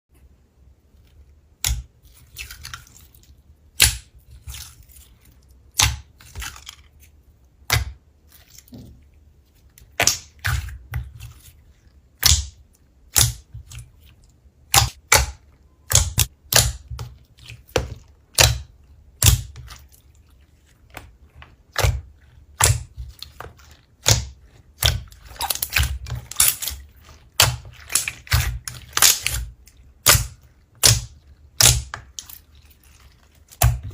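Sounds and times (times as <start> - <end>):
slime making wet pops: 1.6 - 1.9, 3.7 - 4.1, 9.9 - 11.1, 12.2 - 13.8, 14.7 - 19.9, 20.9 - 32.4.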